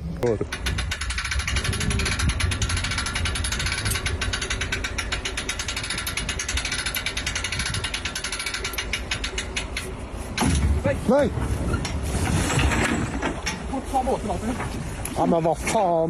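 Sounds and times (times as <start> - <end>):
low rumble: 0.0 - 9.4
ratchet-like mechanical clicking: 0.2 - 9.9.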